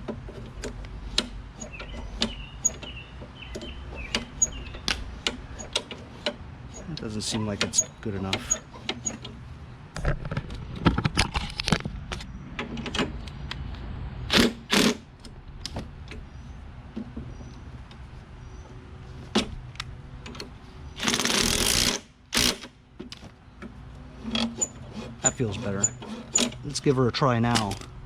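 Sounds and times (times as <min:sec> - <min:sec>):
hand tools clicking and knocking: 0:00.0 - 0:09.4, 0:20.2 - 0:28.0.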